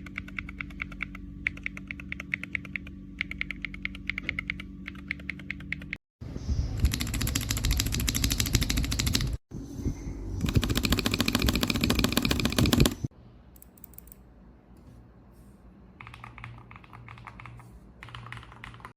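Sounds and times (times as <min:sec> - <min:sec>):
rapid keyboard key presses: 0:00.0 - 0:06.0, 0:06.8 - 0:09.4, 0:10.4 - 0:13.1, 0:16.0 - 0:18.9.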